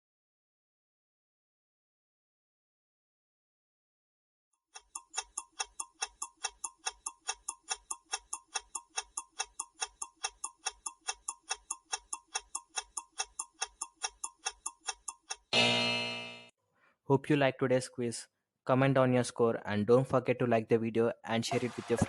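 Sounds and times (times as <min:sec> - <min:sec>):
rapid clock ticking: 0:04.8 - 0:15.6
loud ringing tone: 0:15.6 - 0:16.5.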